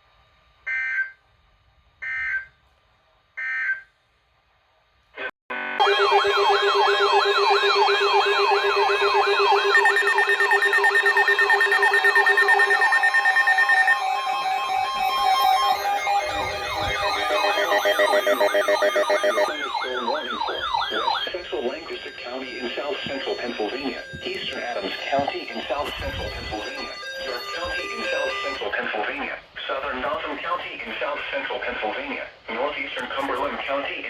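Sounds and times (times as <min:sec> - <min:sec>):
wailing siren sweeps: 0:05.7 - 0:28.7
steady electronic tones: 0:05.8 - 0:29.4
warbling data bursts: 0:05.8 - 0:30.1.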